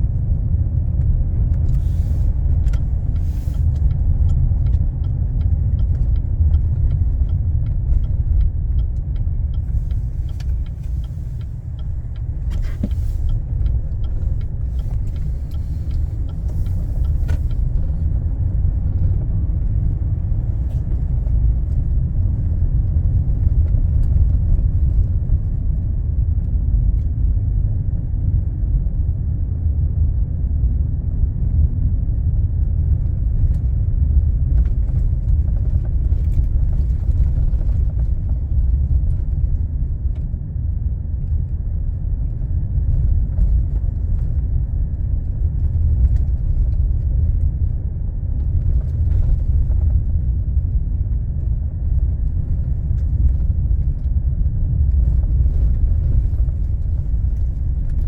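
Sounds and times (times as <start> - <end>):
wind buffeting microphone: 42.4 - 58.0.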